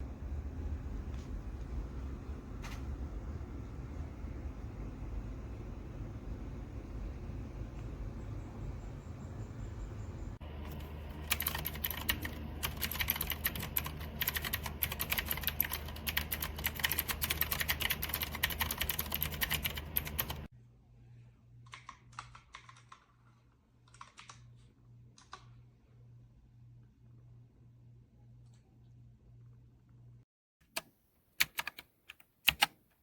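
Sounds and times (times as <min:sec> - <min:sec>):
low hum: 0:00.0 - 0:21.5
mechanical keyboard typing: 0:10.6 - 0:20.5, 0:21.7 - 0:23.1, 0:23.8 - 0:24.5, 0:30.7 - 0:32.8.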